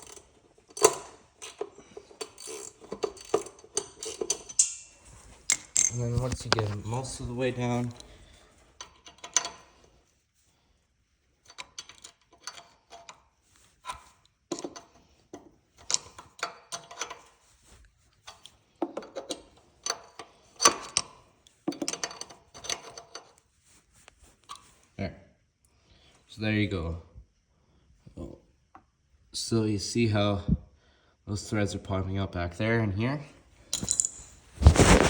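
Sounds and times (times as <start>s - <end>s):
socket ratchet clicking: 0.0s - 4.9s.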